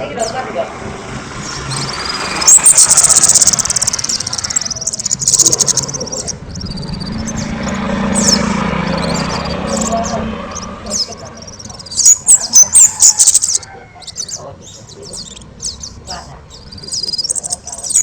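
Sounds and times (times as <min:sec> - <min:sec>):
songbird trilling: 0:01.2 - 0:18.0
songbird whistled notes: 0:01.6 - 0:16.0.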